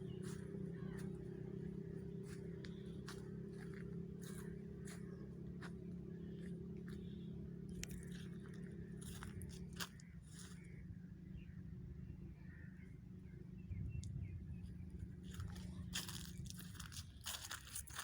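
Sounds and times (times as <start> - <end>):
steady low hum: 0.0 - 18.0
footsteps crunching dry leaves: 0.1 - 10.8, 15.2 - 18.0.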